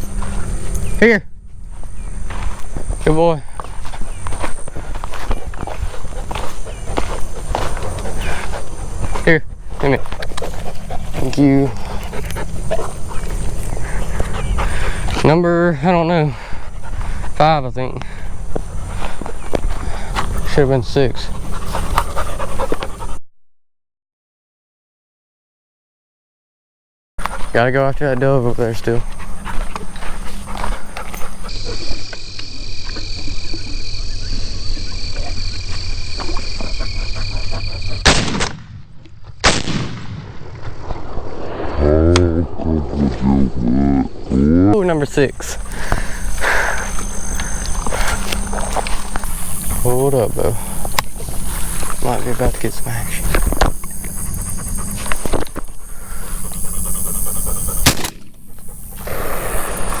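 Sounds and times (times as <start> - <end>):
shotgun shots: 38.0 - 40.5, 57.8 - 58.3
rumbling microphone noise: 40.9 - 56.8.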